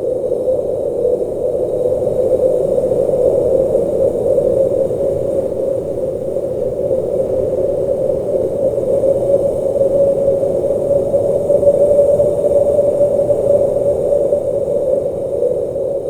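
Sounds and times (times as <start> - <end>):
howling blizzard wind: 0.0 - 16.0.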